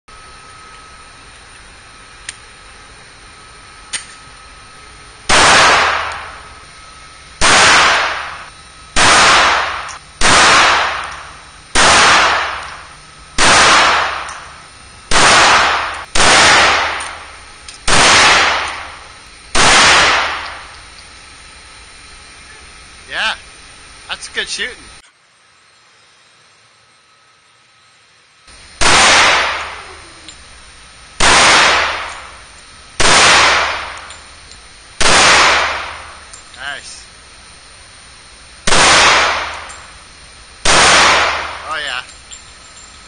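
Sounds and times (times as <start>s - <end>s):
handgun shots: 5.3s - 6.3s, 7.4s - 8.4s, 11.8s - 12.8s, 13.4s - 14.4s, 15.1s - 17.2s, 31.2s - 32.2s, 38.7s - 39.7s, 40.6s - 41.5s.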